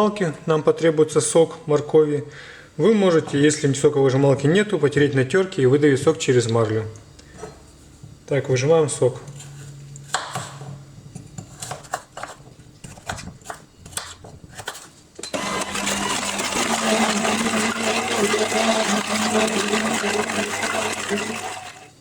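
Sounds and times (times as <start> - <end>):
electric juicer motor running: 15.3 - 22.0.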